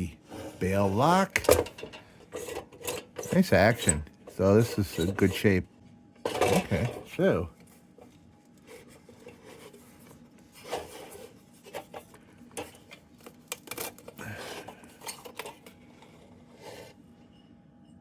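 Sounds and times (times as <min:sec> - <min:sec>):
metal parts clicking and clinking: 0:01.3 - 0:05.5, 0:06.3 - 0:07.2, 0:10.6 - 0:16.1
steel rubbing on steel: 0:02.3 - 0:05.6.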